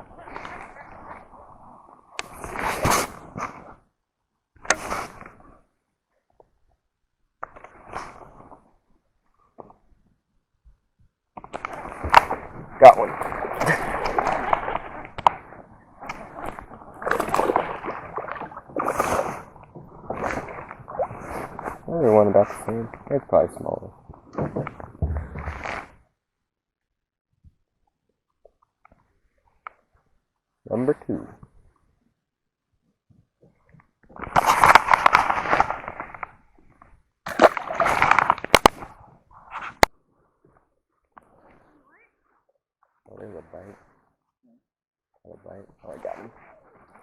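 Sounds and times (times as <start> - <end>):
water splashing and sloshing: 0.0 - 3.9, 11.4 - 26.1, 34.1 - 39.9, 45.8 - 47.0.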